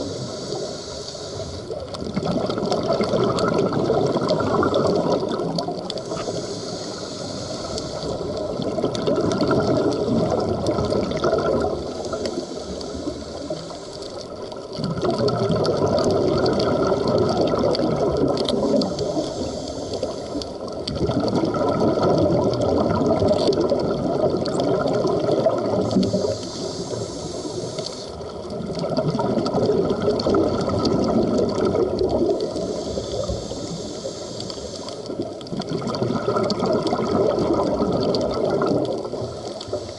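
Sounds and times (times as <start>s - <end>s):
diver breathing through regulator: 0.0s - 1.8s, 4.2s - 8.7s, 11.4s - 14.5s, 18.3s - 20.6s, 25.0s - 28.3s, 32.3s - 35.4s
bubbles rushing and gurgling: 0.0s - 39.9s.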